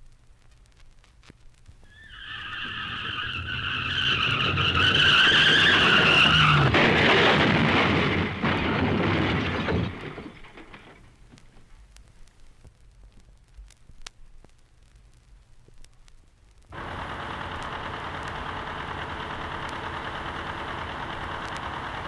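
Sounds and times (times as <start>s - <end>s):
car tyres screeching: 1.9s - 8.0s
car crash crunch: 2.4s - 11.7s.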